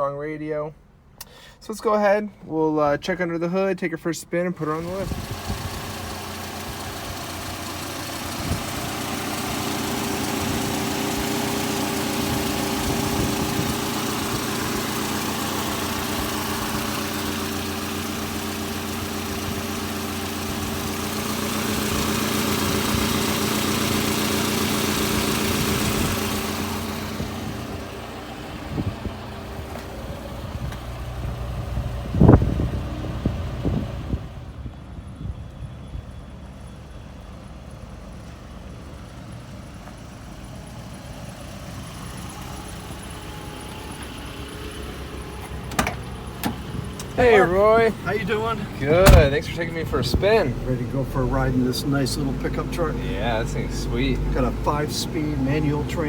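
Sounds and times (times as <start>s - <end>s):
pickup engine idling: 4.5s - 34.8s, 36.6s - 56.0s
sharp thump: 49.0s - 49.5s.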